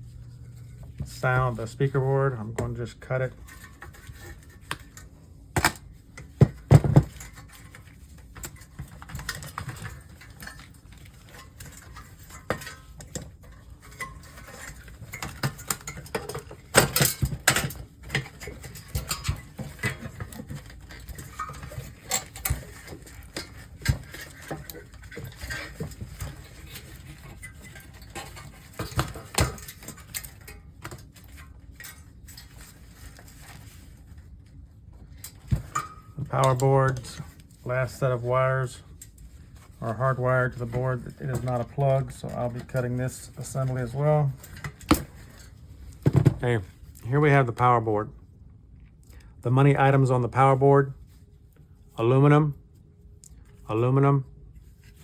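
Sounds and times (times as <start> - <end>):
hand tools clicking on metal parts: 3.1 - 33.6.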